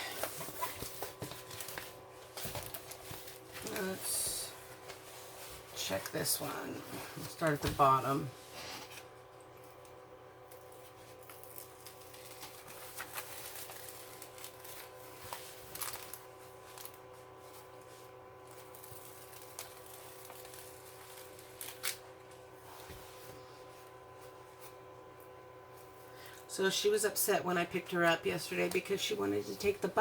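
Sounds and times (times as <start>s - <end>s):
faint steady hum: 0.0s - 30.0s
plastic film crinkling: 10.6s - 17.5s, 18.4s - 22.4s.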